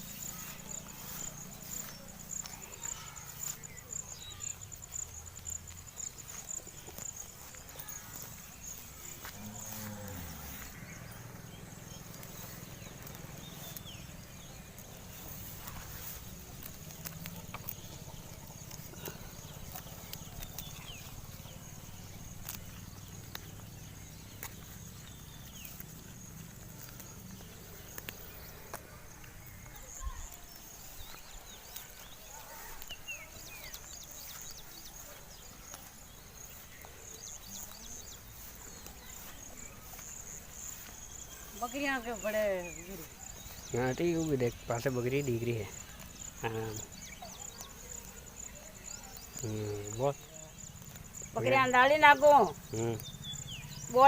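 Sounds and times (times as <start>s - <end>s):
goats moving about: 0.0s - 49.4s
high-pitched insect trill: 0.0s - 54.0s.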